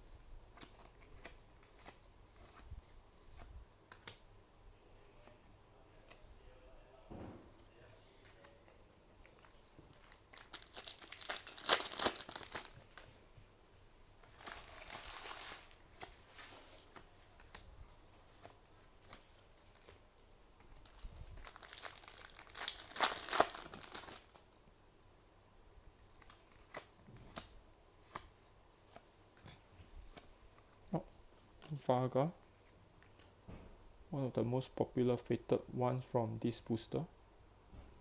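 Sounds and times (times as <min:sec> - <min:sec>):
wrapper crinkling and tearing: 0:09.9 - 0:13.1, 0:14.2 - 0:16.6, 0:20.8 - 0:24.6.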